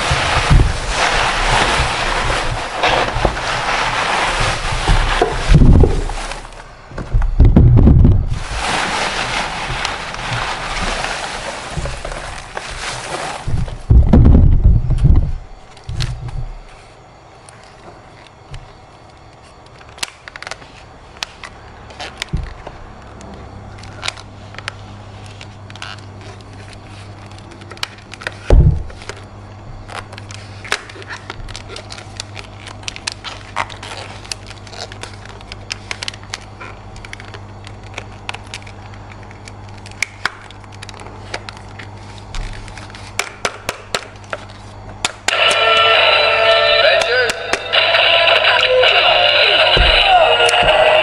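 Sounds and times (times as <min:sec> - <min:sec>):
loud thump: 0:00.1 - 0:00.9, 0:04.8 - 0:06.2, 0:07.0 - 0:08.5, 0:13.5 - 0:15.4, 0:28.5 - 0:29.0.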